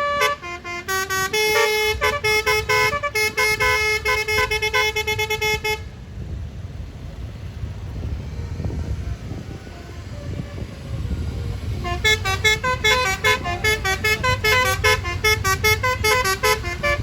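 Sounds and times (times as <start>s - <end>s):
bus horn playing a fast tune: 0.0s - 6.1s, 11.6s - 17.0s
low vehicle rumble: 0.0s - 17.0s.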